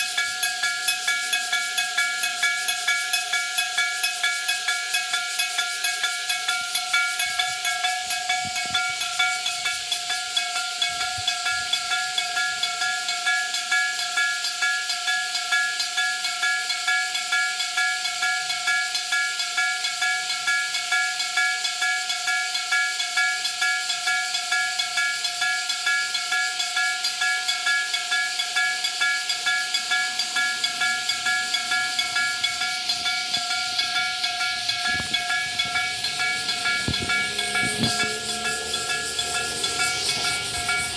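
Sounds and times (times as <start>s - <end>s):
level crossing bell ringing: 29.1s - 40.9s.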